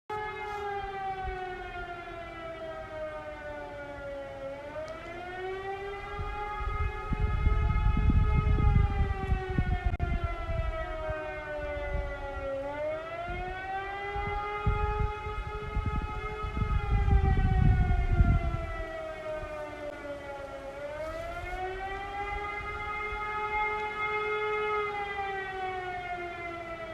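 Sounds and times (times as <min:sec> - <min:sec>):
civil defence siren wailing: 0:00.1 - 0:26.9.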